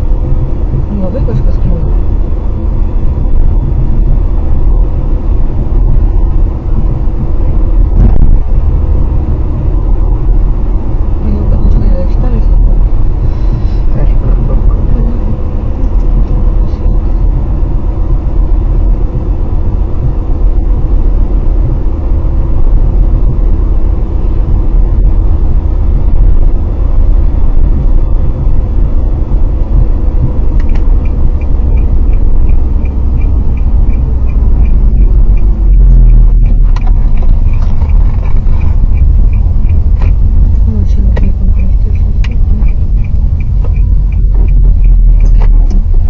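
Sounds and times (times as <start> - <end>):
car engine rumble: 0.0 - 46.0
faint high-pitched tick: 30.6 - 40.2, 41.1 - 45.8.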